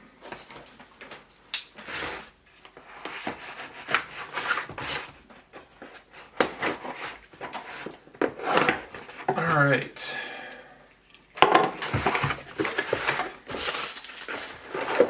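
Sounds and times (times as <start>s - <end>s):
packaging rubbing and scraping: 1.8s - 9.3s, 11.8s - 15.0s.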